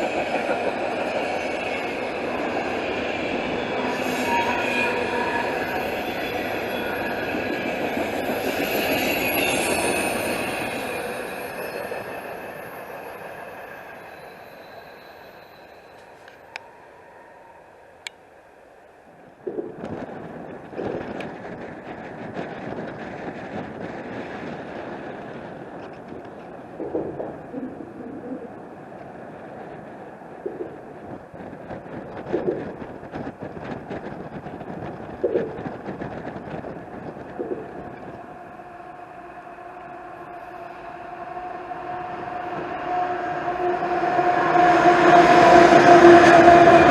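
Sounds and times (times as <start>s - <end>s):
freight train low tone: 0.0s - 19.4s, 32.4s - 46.9s
wind buffeting microphone: 19.3s - 39.1s.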